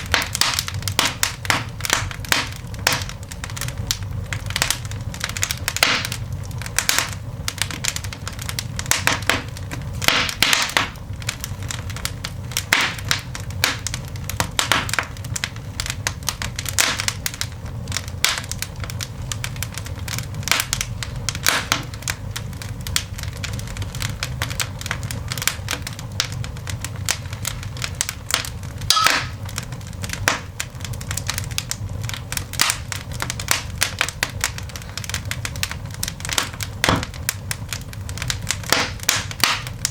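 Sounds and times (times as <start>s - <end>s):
coal fire crackling and popping: 0.0s - 39.9s
low rumble: 17.4s - 38.6s.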